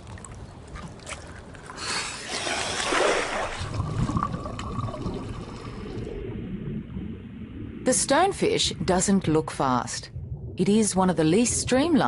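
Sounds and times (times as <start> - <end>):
rushing bubbling water: 2.2 - 8.2
low rumble: 3.6 - 12.0.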